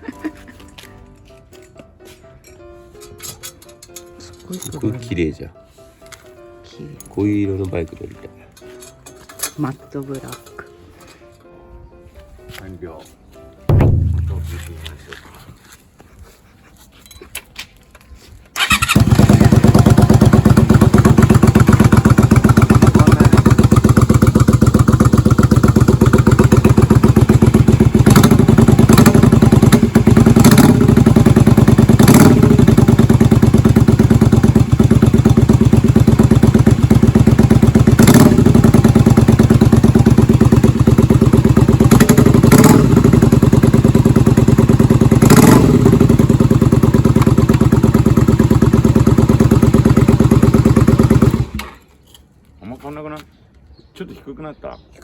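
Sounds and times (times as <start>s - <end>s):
motorcycle engine running: 13.7s - 15.0s, 18.6s - 51.6s.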